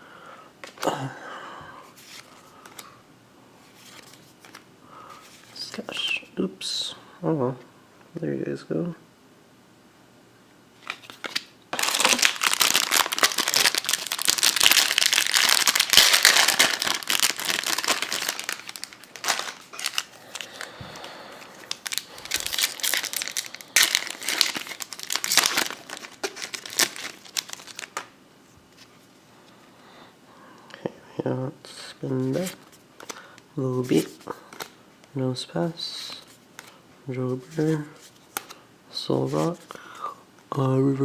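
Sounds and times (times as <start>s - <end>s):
foil wrapper crinkling: 10.8s - 28.1s.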